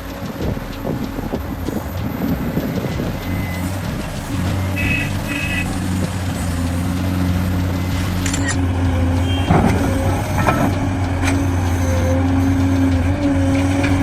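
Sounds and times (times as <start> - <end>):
heavy diesel machinery running: 0.0 - 14.0
reversing alarm beeps: 3.2 - 5.8, 7.8 - 12.4.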